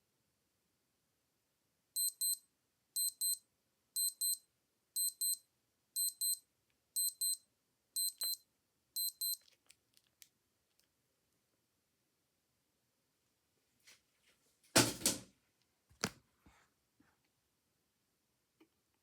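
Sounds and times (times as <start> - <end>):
wristwatch alarm double beeps: 2.0 - 2.4, 3.0 - 3.4, 4.0 - 4.4, 5.0 - 5.4, 6.0 - 6.4, 7.0 - 7.4, 8.0 - 8.4, 9.0 - 9.4.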